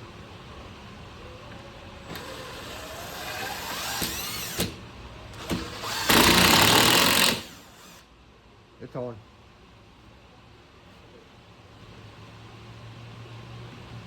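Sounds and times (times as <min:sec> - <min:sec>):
cordless drill driving screw: 0:02.1 - 0:04.8, 0:05.4 - 0:08.0.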